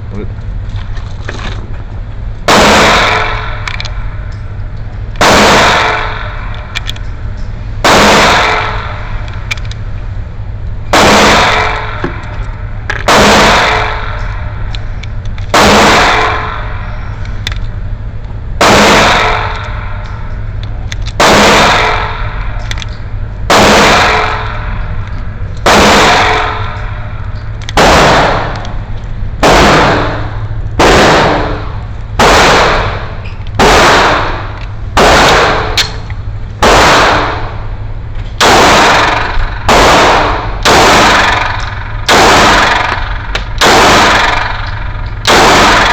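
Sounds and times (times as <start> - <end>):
low hum: 0.0 - 45.9
pistol shots: 2.5 - 4.0, 5.2 - 7.0, 7.8 - 9.3, 10.9 - 12.3, 13.0 - 14.4, 15.5 - 16.8, 18.6 - 20.0, 21.1 - 24.9, 25.6 - 37.6, 38.4 - 45.9.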